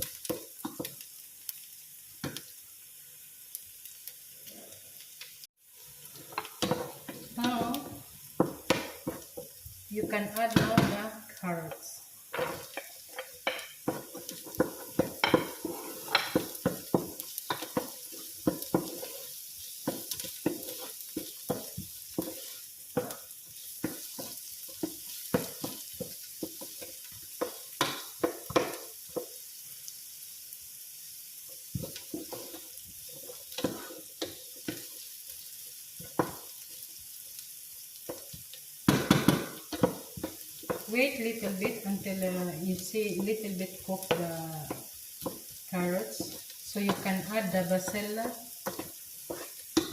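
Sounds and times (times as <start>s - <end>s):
vegetables sizzling in frying pan: 0.0s - 49.9s
utensil clanking and scraping pan: 12.3s - 23.2s, 31.8s - 34.9s, 46.2s - 49.9s.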